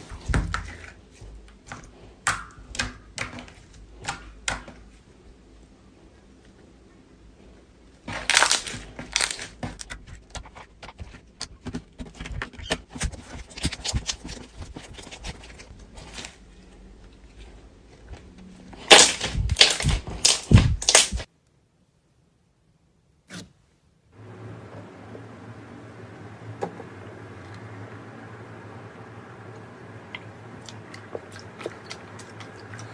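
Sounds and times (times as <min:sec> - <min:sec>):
slime squelching: 0:08.0 - 0:17.8, 0:18.7 - 0:21.3, 0:30.0 - 0:32.9.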